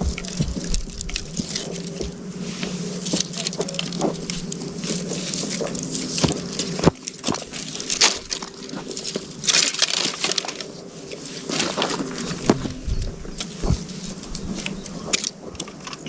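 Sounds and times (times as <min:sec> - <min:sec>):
dry wood crackling and snapping: 0:00.0 - 0:16.0
faint steady hum: 0:00.0 - 0:16.0.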